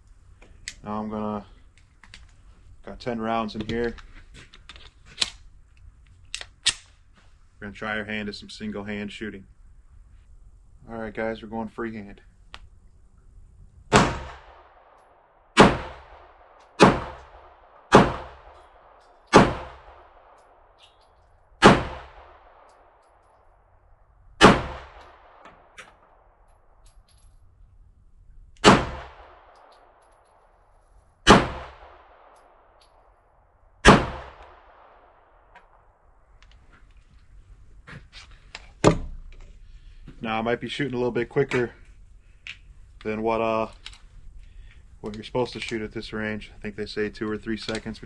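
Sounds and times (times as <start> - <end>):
pistol shots with echo: 13.9 - 20.5, 21.6 - 23.1, 24.4 - 26.3, 28.6 - 30.3, 31.2 - 33.0, 33.8 - 35.8.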